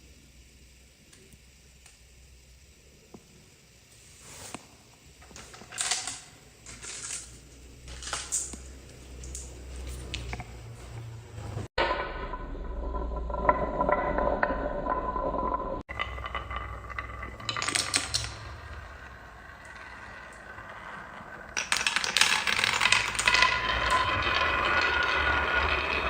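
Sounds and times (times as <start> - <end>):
marbles clattering down marble run: 5.3 - 8.6, 11.8 - 26.0.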